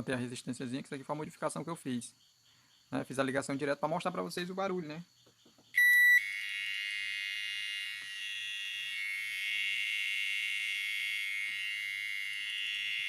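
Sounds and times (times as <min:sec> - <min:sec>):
high-pitched buzzing beeper: 0:05.8 - 0:13.0.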